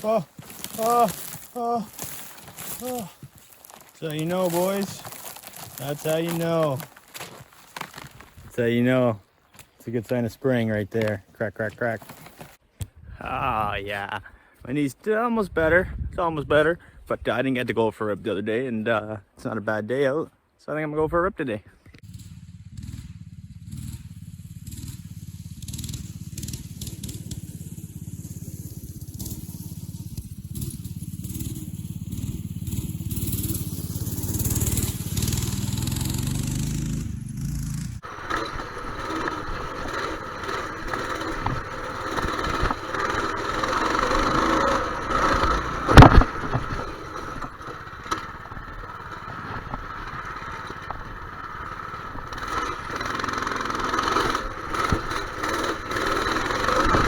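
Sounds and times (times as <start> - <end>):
motorcycle engine running: 0.0 - 9.2, 22.0 - 57.0.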